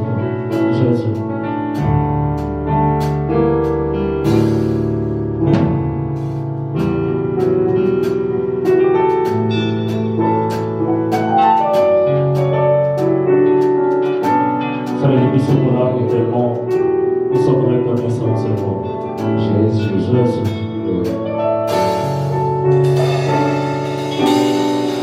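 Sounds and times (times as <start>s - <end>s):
keyboard playing slow chords: 0.0s - 25.0s.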